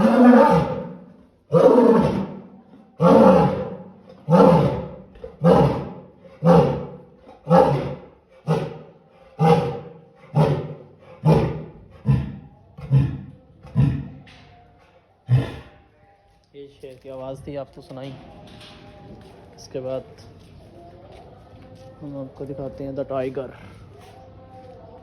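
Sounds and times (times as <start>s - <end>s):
lion roaring: 0.0s - 14.2s, 15.3s - 15.8s.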